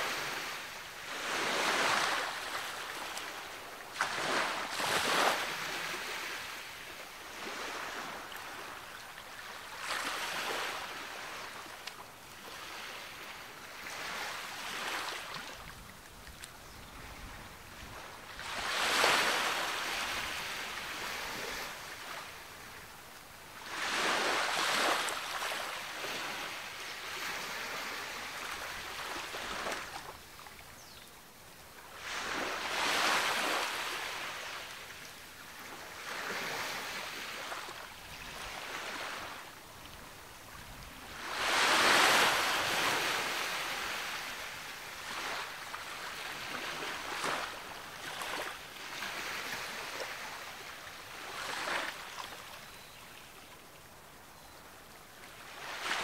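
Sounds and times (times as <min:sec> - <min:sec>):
ocean waves breaking: 0:00.0 - 0:06.8, 0:18.4 - 0:22.3, 0:41.0 - 0:50.4.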